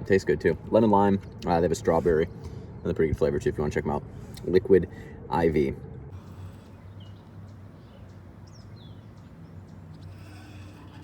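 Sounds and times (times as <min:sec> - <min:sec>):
low outdoor background hum: 0:00.0 - 0:11.0
faint bird chirps: 0:06.3 - 0:11.0.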